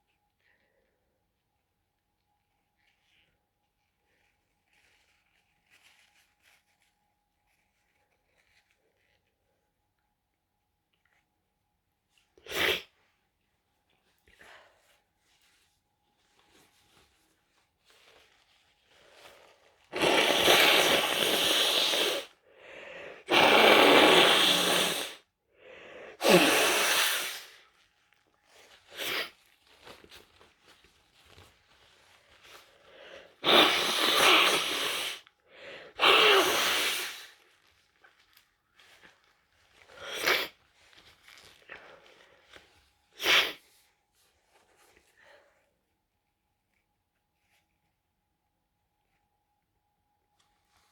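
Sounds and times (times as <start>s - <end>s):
person stifling sneezes: 12.4s - 12.9s, 19.9s - 22.3s, 23.2s - 25.2s, 26.2s - 27.6s, 28.9s - 29.3s, 33.4s - 35.2s, 35.9s - 37.4s, 40.0s - 40.6s, 43.2s - 43.7s
wheezy breaths: 18.9s - 27.8s, 32.4s - 37.5s.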